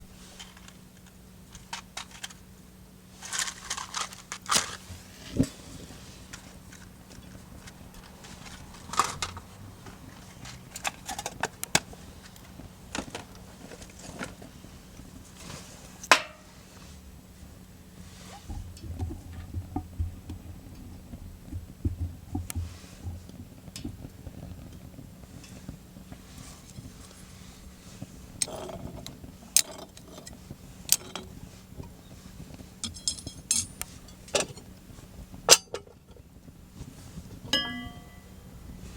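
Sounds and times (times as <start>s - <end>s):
things being handled clicking: 0.4s - 2.4s, 3.2s - 4.9s, 32.8s - 34.7s
low rumbling thumps: 18.5s - 25.2s.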